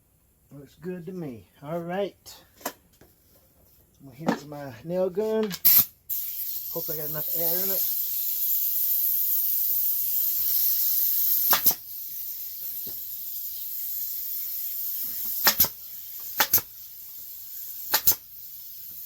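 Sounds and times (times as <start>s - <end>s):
compressed air hissing: 5.6s - 19.0s
nail gun firing: 11.2s - 11.9s, 15.2s - 16.8s, 17.8s - 18.3s.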